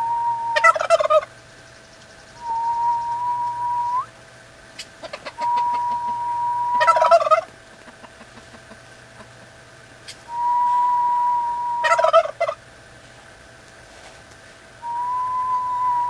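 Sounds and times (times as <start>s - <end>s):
whistle-like tone: 0.0s - 0.8s, 2.4s - 4.1s, 5.4s - 6.9s, 10.3s - 12.0s, 14.8s - 16.0s
turkey gobbling: 0.0s - 1.4s, 4.7s - 12.6s.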